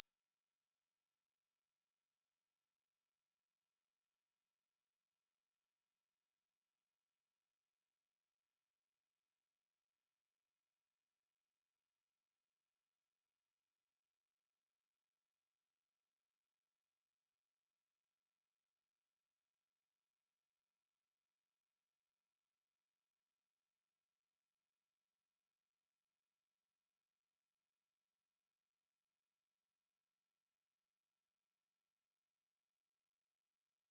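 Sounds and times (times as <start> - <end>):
high-pitched sine test tone: 33.5 - 33.9.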